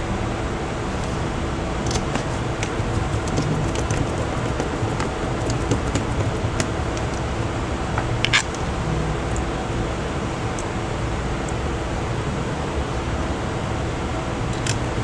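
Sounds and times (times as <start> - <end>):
steady mechanical hum: 0.0 - 15.0
small clicks and taps: 1.8 - 7.3.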